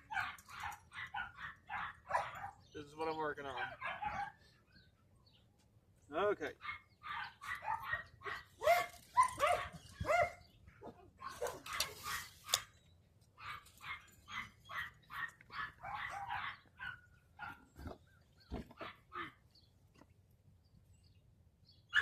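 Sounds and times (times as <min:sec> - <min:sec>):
dogs barking: 0:00.0 - 0:02.8, 0:03.4 - 0:04.6, 0:06.6 - 0:12.7, 0:13.4 - 0:19.4.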